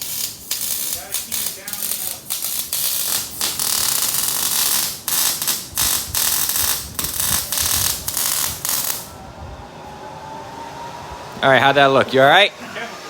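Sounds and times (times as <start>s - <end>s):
welding arc crackling and hissing: 0.0s - 9.1s.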